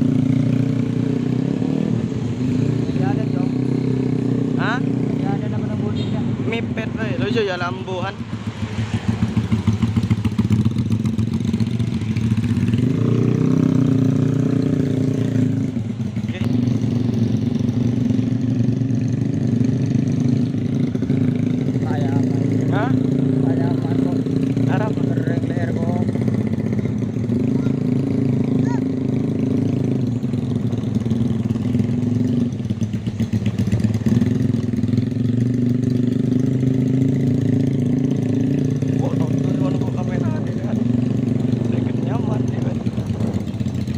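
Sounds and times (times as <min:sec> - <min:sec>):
motorcycle engine running: 0:00.0 - 0:43.9.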